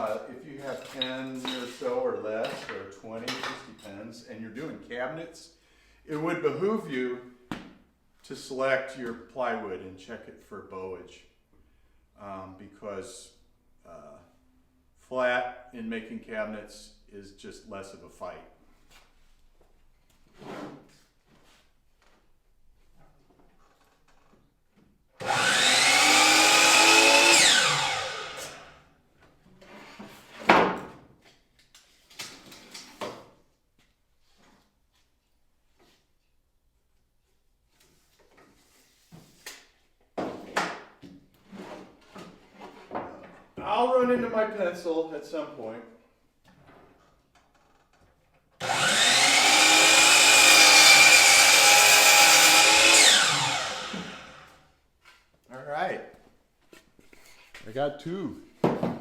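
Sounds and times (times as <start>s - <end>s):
power tool motor whining: 25.2s - 28.6s, 48.6s - 54.5s.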